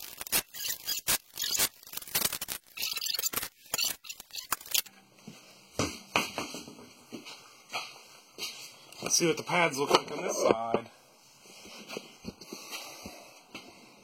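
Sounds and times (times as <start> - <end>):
torque wrench ratcheting: 0.0 - 4.9.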